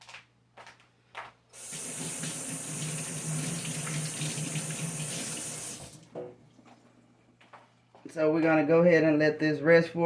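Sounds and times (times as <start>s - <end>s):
kitchen tap turned on: 1.6s - 6.3s
water running into sink: 1.6s - 6.4s.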